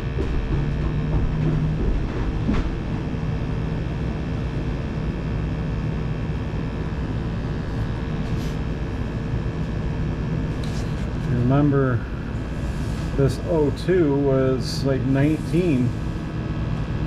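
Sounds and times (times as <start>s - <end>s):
gas furnace burners rushing: 0.0s - 5.6s, 6.6s - 17.0s
low even hum: 0.0s - 17.0s.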